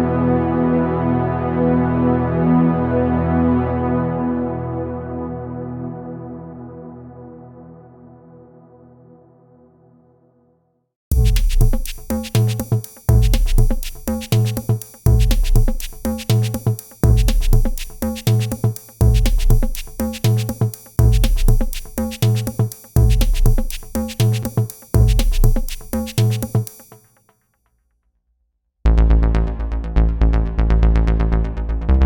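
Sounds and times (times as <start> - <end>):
looping electronic synth pattern: 11.1 - 27.0
drum machine beat: 11.1 - 27.1.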